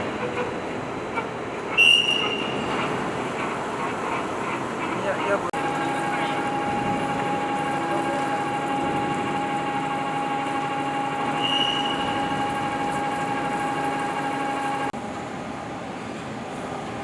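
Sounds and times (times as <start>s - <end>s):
short high squeal: 1.8s - 3.0s, 11.2s - 13.2s
machine tool whine: 2.2s - 15.0s
machining noise: 2.2s - 15.0s.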